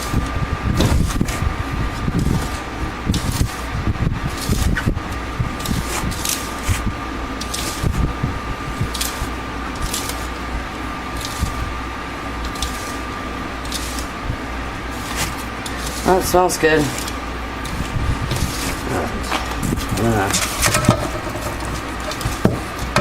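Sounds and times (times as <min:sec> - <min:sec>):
electric fan whining: 0:00.0 - 0:23.0
spoon scraping dry powder: 0:05.6 - 0:07.8, 0:12.4 - 0:14.2, 0:14.9 - 0:22.4.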